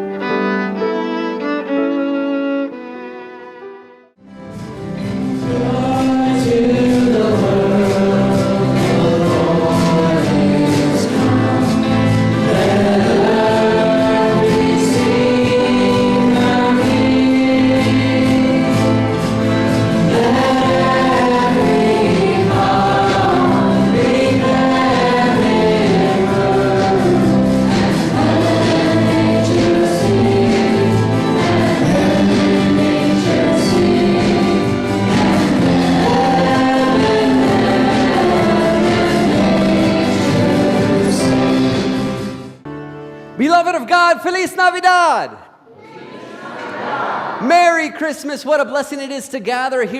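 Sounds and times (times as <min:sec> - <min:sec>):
instrumental accompaniment: 0:00.0 - 0:44.4
choir singing gospel song: 0:05.0 - 0:42.7, 0:45.7 - 0:47.5.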